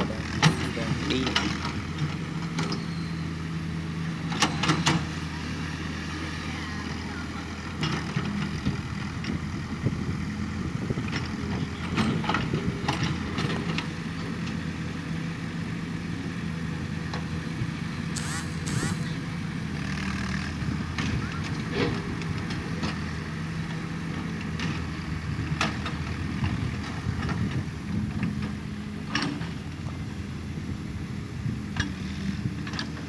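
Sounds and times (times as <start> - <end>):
heavy machine engine humming: 0.0 - 4.3, 17.8 - 27.1.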